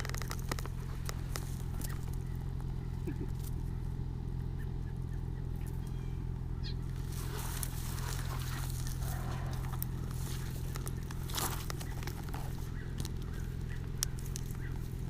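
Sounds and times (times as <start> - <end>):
rustling and crackling in grass: 0.0 - 4.5, 6.8 - 15.0
steady low hum: 0.0 - 15.0
robins making short calls: 1.6 - 15.0.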